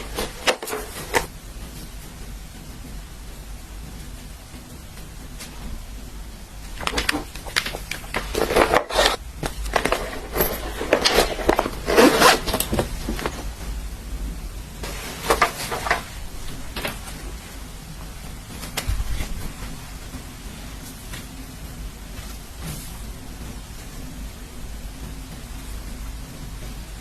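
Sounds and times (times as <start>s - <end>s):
rustling handling noises: 0.0s - 1.8s, 6.5s - 13.9s, 14.8s - 23.1s.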